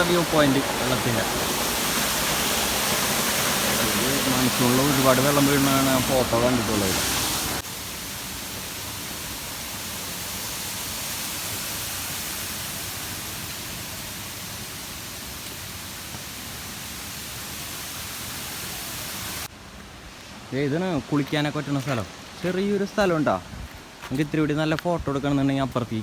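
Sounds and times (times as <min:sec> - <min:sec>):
waterfall rushing: 0:00.0 - 0:19.5.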